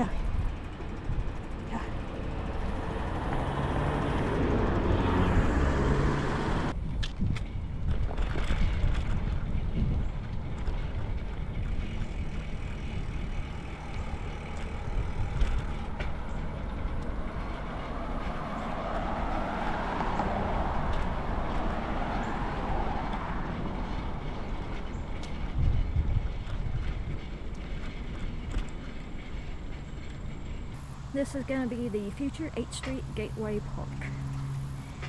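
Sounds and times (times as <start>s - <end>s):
road traffic passing: 0.0s - 35.0s
wind on microphone: 4.0s - 16.0s, 16.8s - 28.2s.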